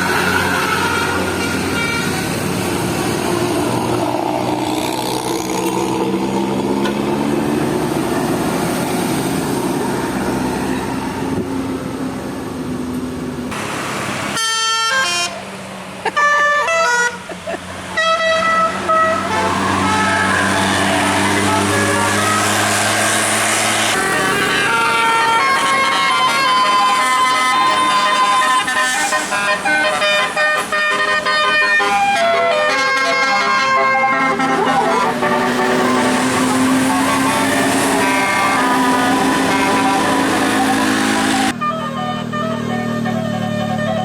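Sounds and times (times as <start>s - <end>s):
musical bus horn melody: 0.0s - 3.3s, 13.5s - 44.0s
bus engine pulling: 0.0s - 44.0s.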